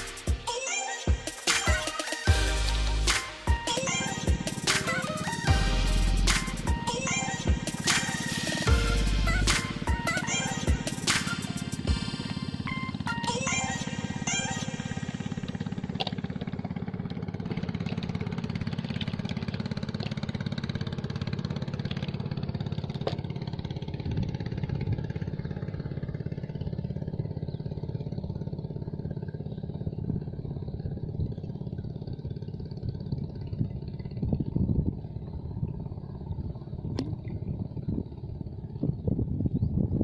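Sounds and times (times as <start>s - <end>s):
small engine running: 0.0s - 39.8s.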